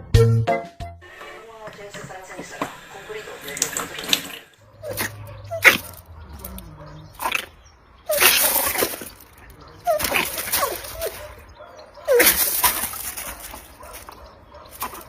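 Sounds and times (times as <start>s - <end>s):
water splashing: 1.8s - 7.5s.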